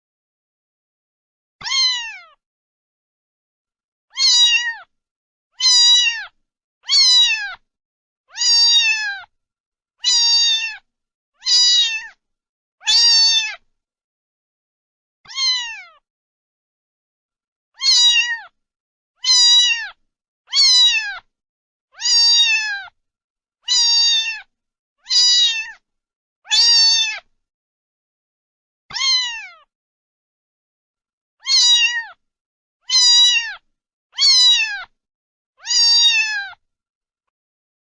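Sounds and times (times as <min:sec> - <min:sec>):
cat meowing: 0:01.6 - 0:02.4, 0:04.1 - 0:04.9, 0:05.6 - 0:07.6, 0:08.3 - 0:09.3, 0:10.0 - 0:12.2, 0:12.8 - 0:13.6, 0:15.3 - 0:16.0, 0:17.8 - 0:18.6, 0:19.2 - 0:21.3, 0:22.0 - 0:23.0, 0:23.6 - 0:25.8, 0:26.5 - 0:27.3, 0:28.9 - 0:29.7, 0:31.4 - 0:32.2, 0:32.8 - 0:35.0, 0:35.6 - 0:36.6.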